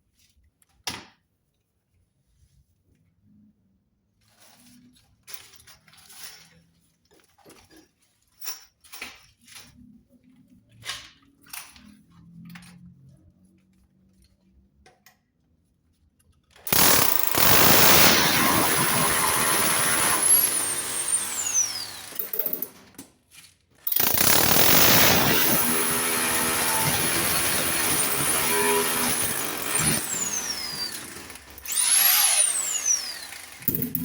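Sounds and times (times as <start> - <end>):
electric drill drilling metal: 16.7 - 22.8, 23.9 - 34.0
tools and parts knocking: 16.7 - 23.0, 33.6 - 34.0.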